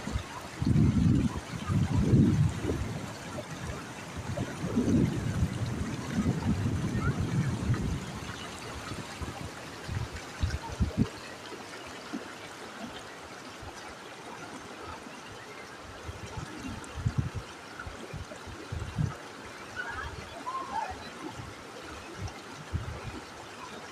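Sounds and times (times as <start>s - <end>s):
waterfall rushing: 19.4s - 21.8s.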